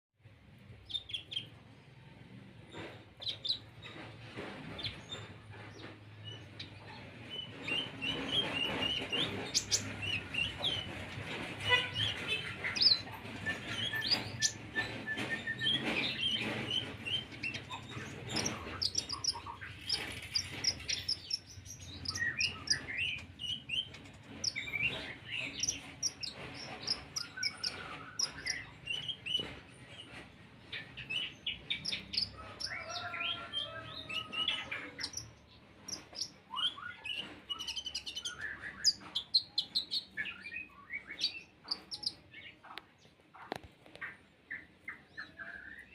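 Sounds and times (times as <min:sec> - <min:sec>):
sunbird singing high chirps and trills: 0:12.0 - 0:29.5.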